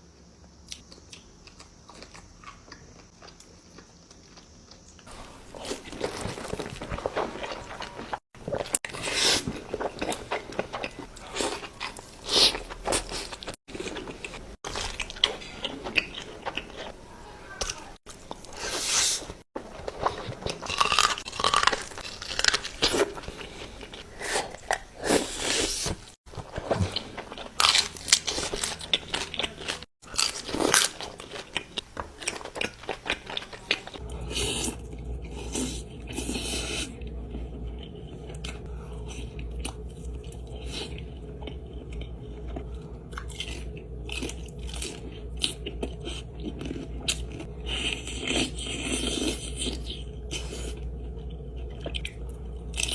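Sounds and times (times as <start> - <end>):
biting crunching and chewing: 17.6 - 34.8
steady low hum: 19.2 - 52.9.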